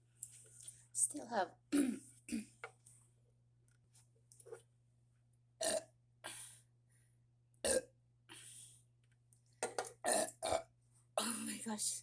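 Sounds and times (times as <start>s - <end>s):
woman burping: 1.7s - 2.6s, 5.6s - 5.9s, 7.6s - 7.9s, 10.0s - 10.6s.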